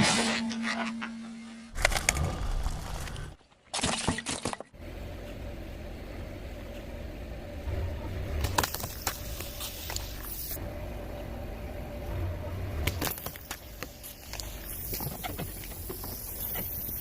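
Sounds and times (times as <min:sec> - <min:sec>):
car rumbling: 0:04.8 - 0:17.0.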